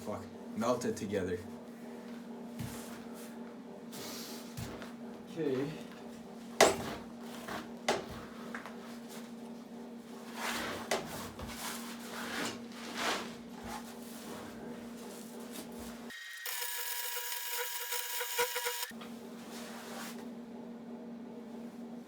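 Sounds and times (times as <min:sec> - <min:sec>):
welder humming: 0:16.1 - 0:18.9
welding arc hissing and crackling: 0:16.4 - 0:18.9.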